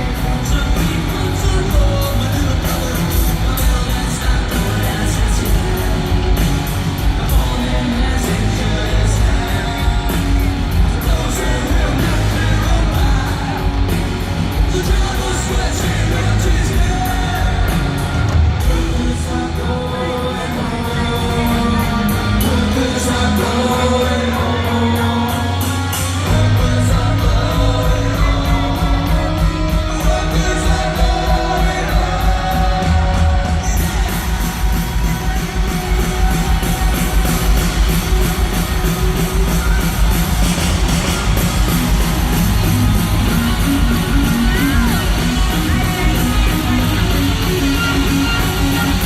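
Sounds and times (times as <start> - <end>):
electric guitars: 0.0 - 49.0
live rock band: 0.0 - 49.0
person singing: 0.0 - 49.0.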